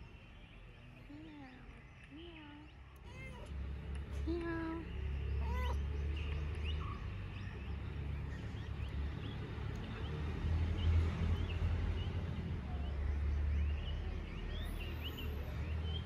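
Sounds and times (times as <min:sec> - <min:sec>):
cat meowing: 0:03.0 - 0:03.5, 0:05.4 - 0:05.8.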